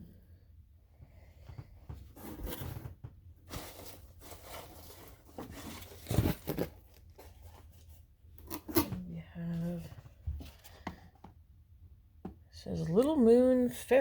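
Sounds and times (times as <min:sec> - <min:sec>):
packaging rustling and crinkling: 0:02.2 - 0:08.8.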